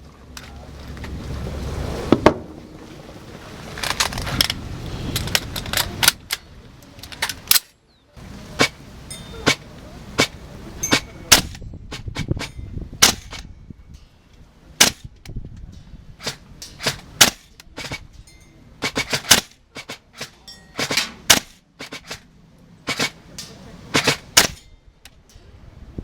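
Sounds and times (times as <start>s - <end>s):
wind on microphone: 0.7s - 7.5s, 8.2s - 18.3s, 23.7s - 26.0s
airsoft rifle shots: 8.6s - 8.8s, 9.4s - 13.5s, 14.8s - 15.2s, 16.2s - 18.1s, 18.8s - 22.3s, 22.9s - 24.7s.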